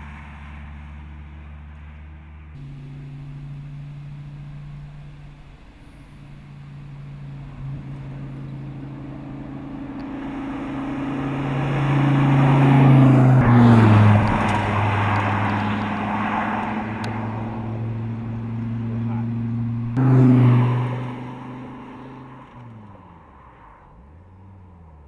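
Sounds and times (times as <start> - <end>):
sports car engine passing: 0.0 - 25.0.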